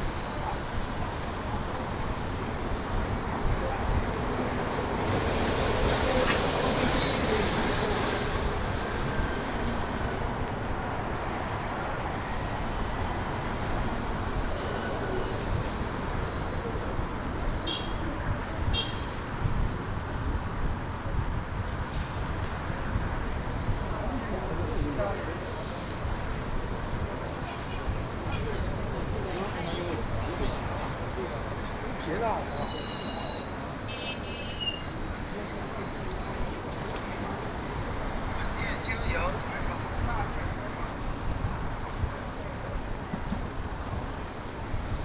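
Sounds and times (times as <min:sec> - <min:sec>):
city street traffic rumble: 0:00.0 - 0:45.0
loud hiss: 0:03.5 - 0:11.6
brief high squeaks: 0:30.5 - 0:35.2.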